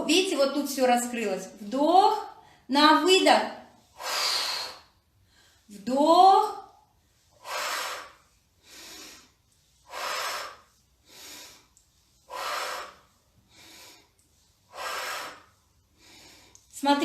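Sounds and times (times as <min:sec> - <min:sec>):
woman breathing deeply: 0:03.8 - 0:05.7, 0:07.0 - 0:16.7.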